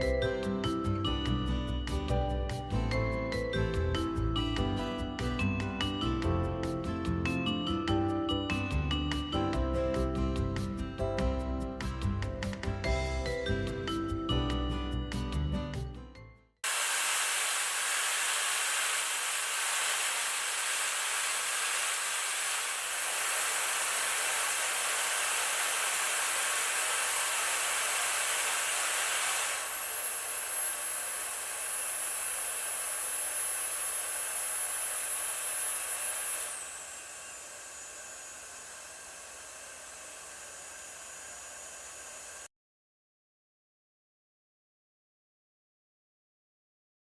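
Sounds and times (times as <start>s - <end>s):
hair dryer blowing: 16.6s - 42.5s
high motor whine: 16.6s - 42.5s.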